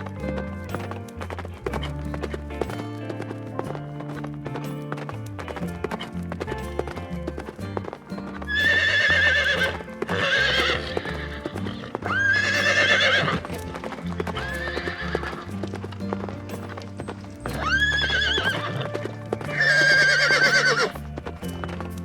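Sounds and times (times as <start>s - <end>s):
background music with bass line: 0.0s - 22.0s
horse whinnying: 8.3s - 21.1s.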